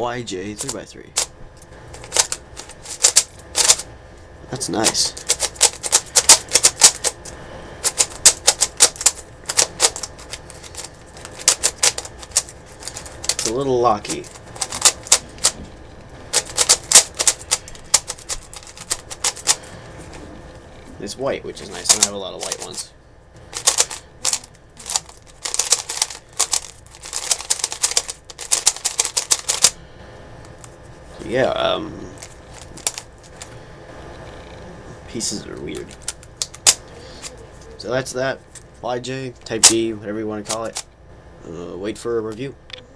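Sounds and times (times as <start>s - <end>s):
speed cube plastic clacking: 2.0s - 3.8s, 4.8s - 7.2s, 7.8s - 15.6s, 16.3s - 19.6s, 21.8s - 22.7s, 23.6s - 29.8s, 40.4s - 40.9s
puzzle cube layers clacking: 23.6s - 29.8s.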